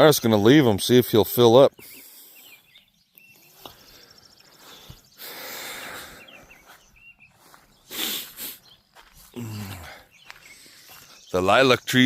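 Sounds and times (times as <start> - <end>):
small birds chirping: 0.0 - 12.0
loud nose sniff: 7.9 - 8.7.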